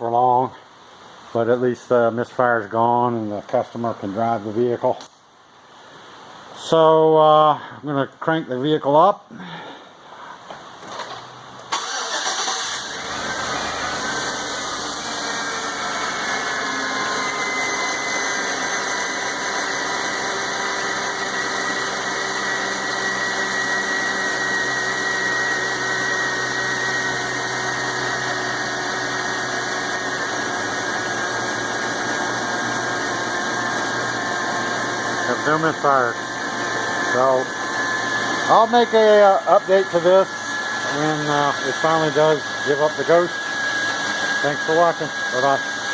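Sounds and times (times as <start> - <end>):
car engine starting and idling: 11.0 - 17.4.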